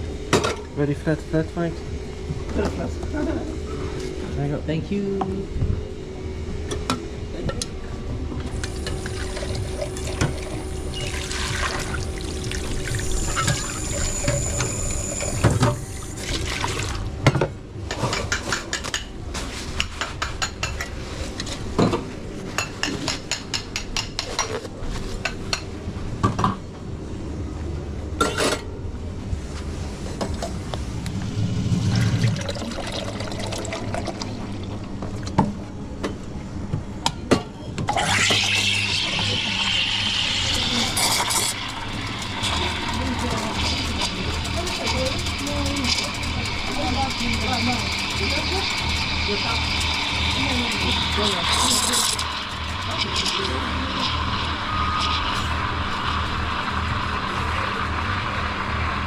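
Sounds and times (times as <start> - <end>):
water running: 8.5 - 17.0, 39.3 - 54.4
liquid pouring: 8.6 - 15.4, 31.7 - 34.7, 38.0 - 57.8.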